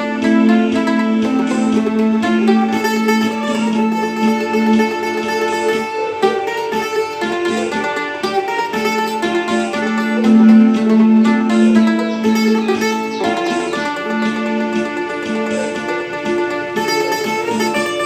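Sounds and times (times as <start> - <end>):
mandolin minor-key melody: 0.0 - 18.0
held low note: 9.3 - 18.0.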